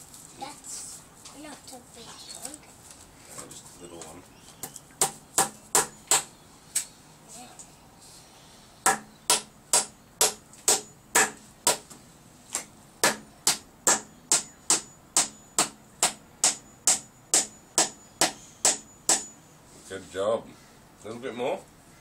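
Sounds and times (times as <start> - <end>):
hammer driving nail into wood: 8.8 - 11.9, 12.6 - 19.3.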